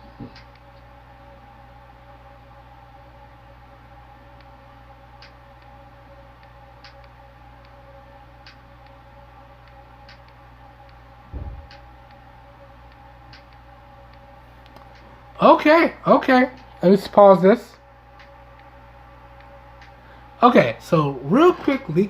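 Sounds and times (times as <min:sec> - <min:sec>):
faint music from earbuds: 0:00.0 - 0:22.0
steady low hum: 0:00.0 - 0:22.0
dull thump: 0:11.3 - 0:11.8.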